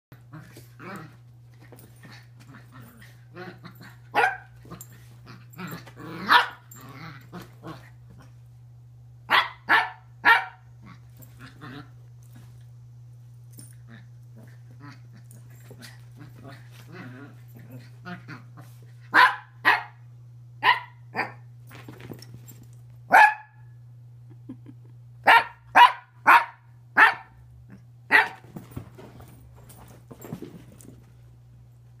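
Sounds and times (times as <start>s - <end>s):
steady low hum: 0.1s - 32.0s
dog grumbling: 2.1s - 4.1s, 4.8s - 8.0s, 10.8s - 11.9s, 13.9s - 18.6s
dog barking: 4.1s - 4.4s, 6.3s - 6.6s, 9.3s - 10.6s, 19.1s - 20.0s, 20.6s - 21.4s, 23.1s - 23.7s, 25.2s - 27.4s, 28.1s - 28.4s.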